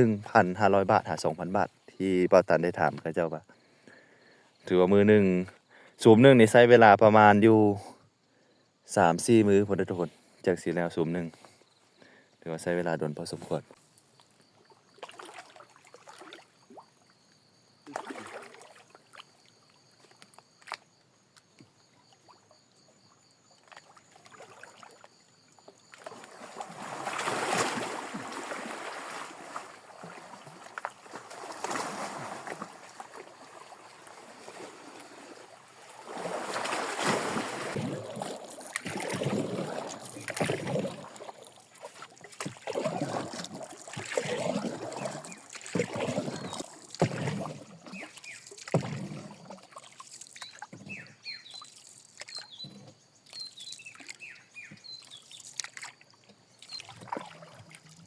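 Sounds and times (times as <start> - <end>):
water splashing and sloshing: 13.2 - 58.0.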